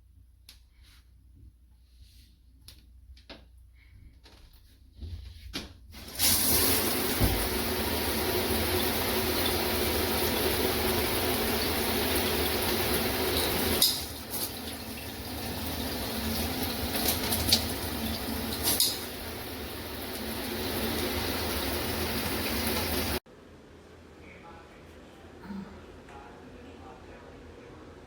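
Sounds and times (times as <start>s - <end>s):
shower water spraying: 5.9s - 23.2s.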